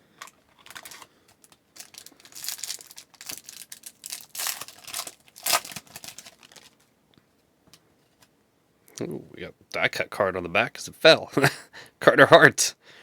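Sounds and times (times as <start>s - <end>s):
wrapper tearing and crinkling: 0.2s - 6.9s.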